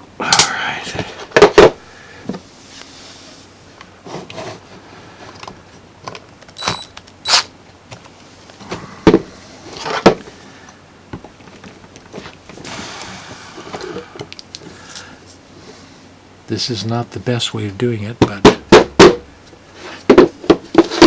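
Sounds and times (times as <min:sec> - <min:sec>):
sharp knocks: 0:18.2 - 0:19.3.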